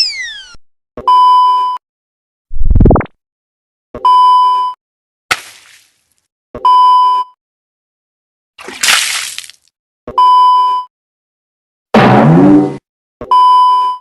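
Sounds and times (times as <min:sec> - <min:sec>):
electronic censor bleep: 0:00.0 - 0:01.8, 0:06.6 - 0:07.4, 0:10.1 - 0:10.9, 0:13.2 - 0:14.0.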